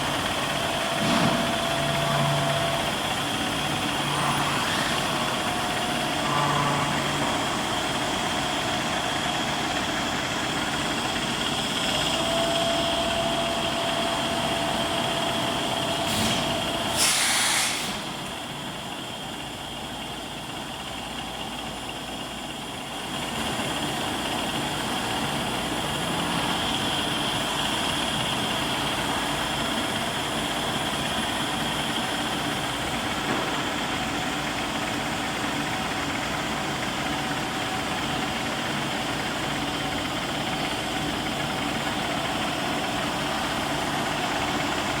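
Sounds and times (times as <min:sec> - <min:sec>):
high machine whine: 0:00.0 - 0:20.3
workshop machinery humming: 0:00.0 - 0:45.0
short loud hiss: 0:16.1 - 0:18.1.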